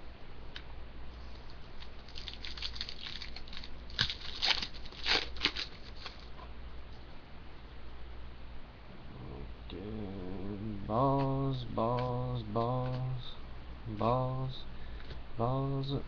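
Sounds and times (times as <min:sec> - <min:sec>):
faint low hum: 0:00.0 - 0:16.0
wrapper tearing and crinkling: 0:01.8 - 0:06.3.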